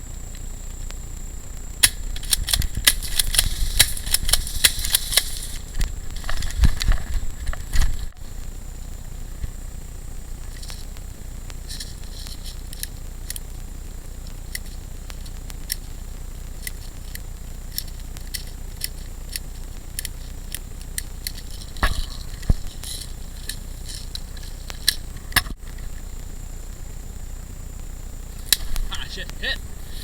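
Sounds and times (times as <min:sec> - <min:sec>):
steady low rumble: 0:00.0 - 0:30.0
sharp clicks and snaps: 0:01.8 - 0:08.0, 0:10.6 - 0:13.5, 0:14.2 - 0:15.9, 0:16.6 - 0:25.9, 0:28.4 - 0:28.9.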